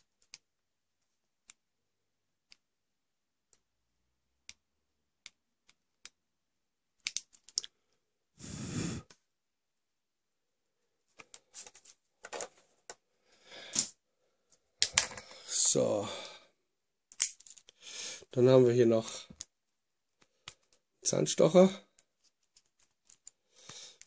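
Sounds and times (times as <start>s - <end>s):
breathy rush of noise: 8.4s - 9.1s.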